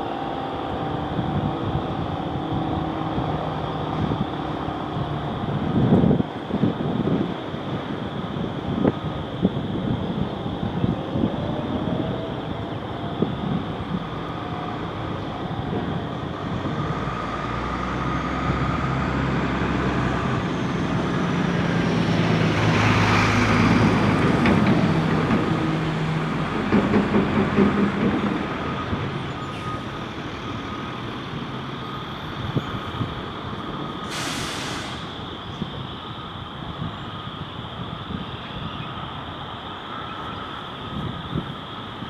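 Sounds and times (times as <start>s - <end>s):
truck passing: 0.0s - 38.2s
short hiss: 34.1s - 35.2s.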